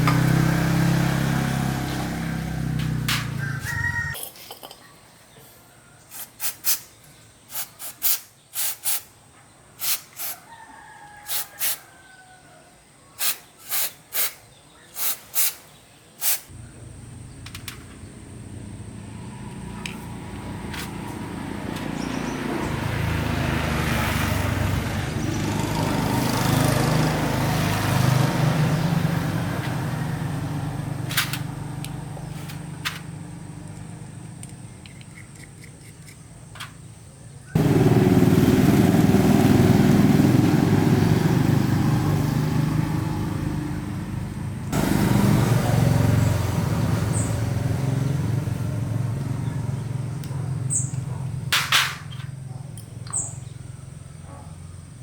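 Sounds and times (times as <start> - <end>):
vehicle engine passing by: 0.0 - 4.2, 16.6 - 34.4, 37.6 - 55.0.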